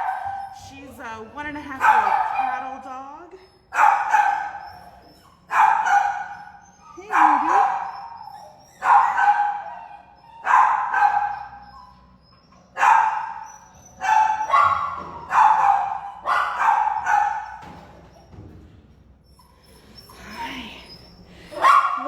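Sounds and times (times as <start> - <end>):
dog barking with echo: 1.8 - 2.7, 14.0 - 17.6, 21.6 - 22.0.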